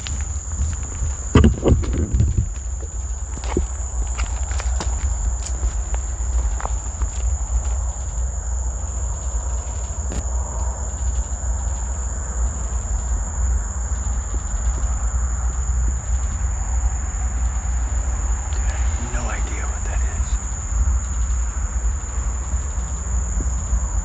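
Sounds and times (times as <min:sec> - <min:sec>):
low rumble: 0:16.0 - 0:24.0
high-pitched whine: 0:17.3 - 0:23.2.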